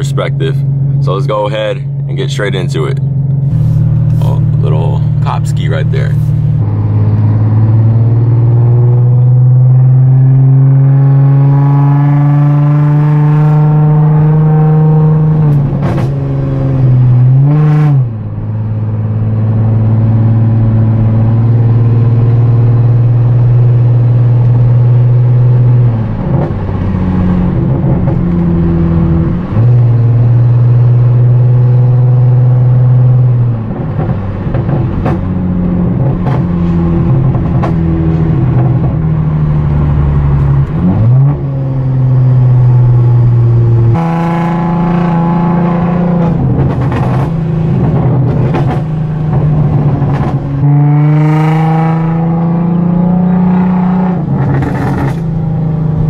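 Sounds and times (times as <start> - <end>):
car engine drone from cabin: 0.0 - 56.0
exhaust cracks: 32.8 - 41.5, 42.3 - 52.4, 53.6 - 56.0.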